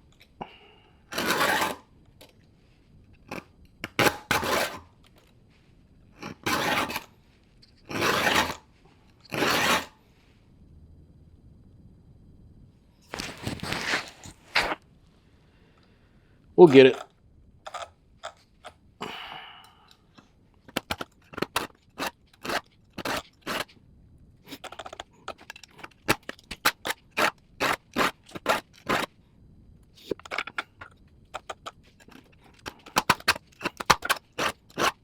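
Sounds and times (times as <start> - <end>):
file rasping on chainsaw chain: 1.1 - 1.8, 4.3 - 4.8, 6.4 - 7.1, 7.9 - 8.6, 9.3 - 9.9, 20.8 - 23.7, 24.5 - 29.1, 31.4 - 35.0.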